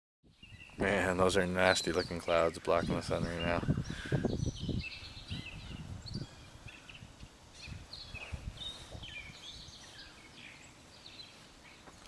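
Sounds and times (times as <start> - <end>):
small birds chirping: 0.3 - 12.0
faint low thuds: 0.6 - 1.3.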